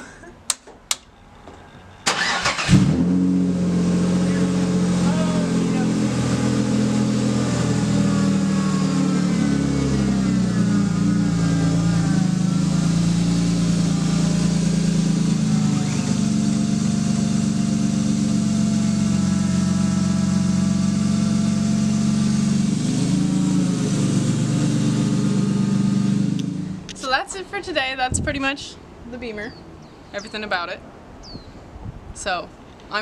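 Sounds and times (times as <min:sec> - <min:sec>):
car engine idling: 0:02.0 - 0:27.0.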